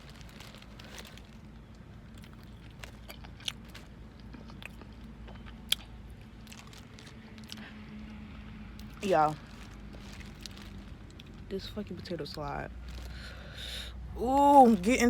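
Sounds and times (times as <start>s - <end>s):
person chewing food: 2.1s - 7.9s.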